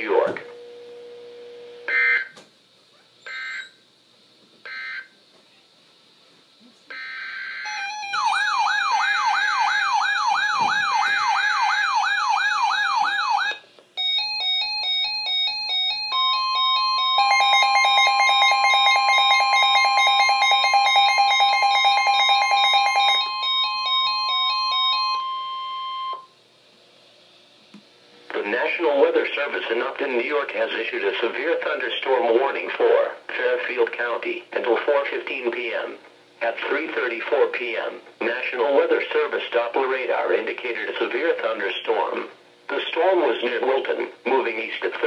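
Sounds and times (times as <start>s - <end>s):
long steady alarm tone: 0.1s - 2.4s, 3.2s - 3.8s, 4.6s - 5.2s, 6.9s - 26.4s
warbling siren-like alarm: 6.9s - 26.3s.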